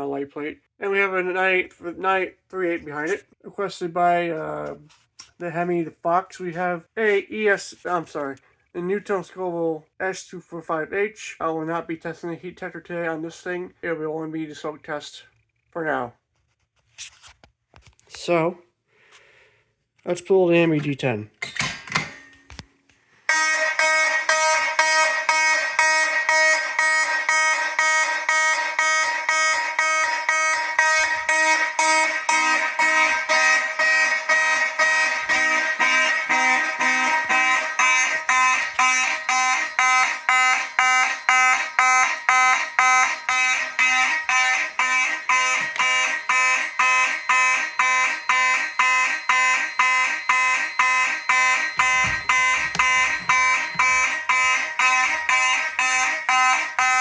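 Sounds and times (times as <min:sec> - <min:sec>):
fire alarm horns pulsing: 0:23.3 - 0:57.0.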